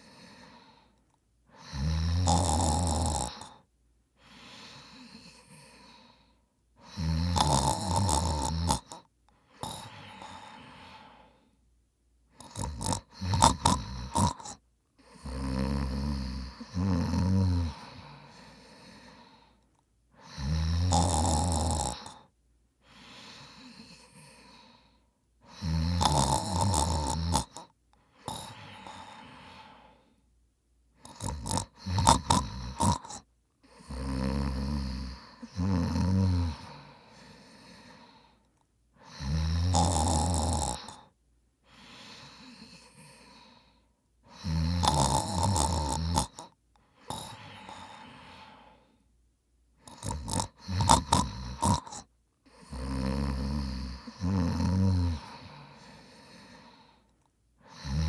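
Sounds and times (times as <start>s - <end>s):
man snoring loudly: 1.6s - 3.6s, 6.8s - 9.0s, 9.6s - 11.1s, 12.4s - 18.9s, 20.2s - 22.2s, 25.5s - 29.8s, 31.0s - 38.1s, 39.0s - 41.1s, 44.3s - 48.7s, 49.8s - 56.9s, 57.7s - 58.0s.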